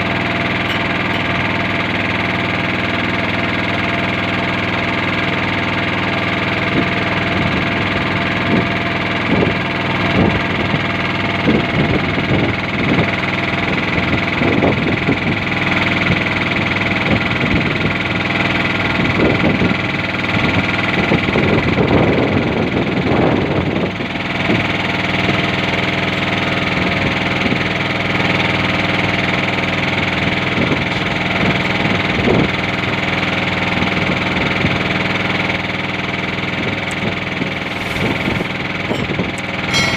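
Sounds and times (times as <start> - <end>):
boat engine running: 0.0 - 39.9.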